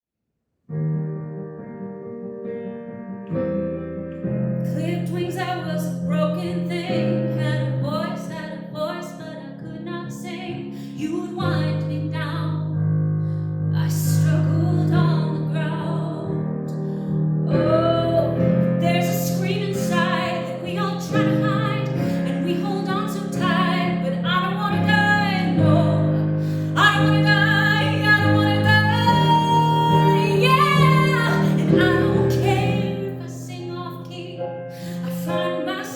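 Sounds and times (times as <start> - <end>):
piano: 0.6 - 35.9
woman singing: 4.7 - 12.7, 13.8 - 16.7, 17.5 - 35.9
sustained keyboard chords: 14.3 - 35.9.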